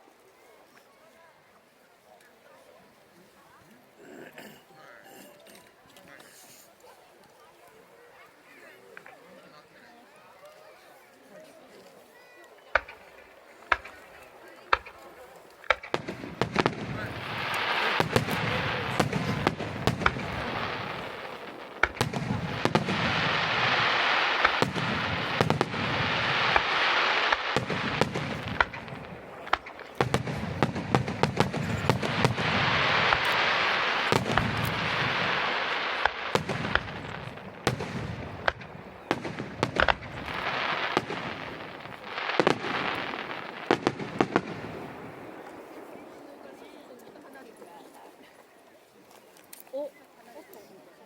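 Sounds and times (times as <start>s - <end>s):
fireworks bangs and crackles: 12.0s - 47.4s
fireworks hissing: 12.7s - 46.1s.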